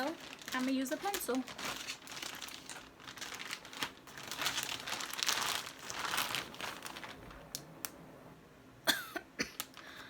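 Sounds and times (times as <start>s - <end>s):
packaging crinkling and tearing: 0.0s - 7.7s.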